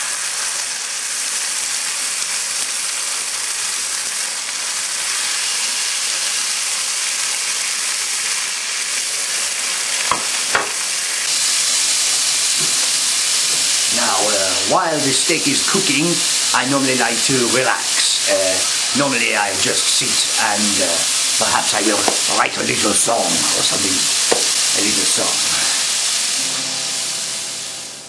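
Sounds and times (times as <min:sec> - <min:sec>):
steak sizzling in a frying pan: 0:00.0 - 0:28.0
sharp pops: 0:21.9 - 0:22.6, 0:24.1 - 0:24.8.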